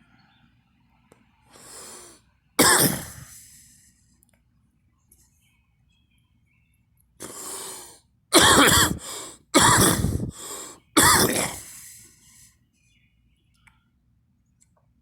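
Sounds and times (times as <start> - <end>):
person coughing: 2.6 - 3.4, 8.4 - 10.4, 11.0 - 11.9.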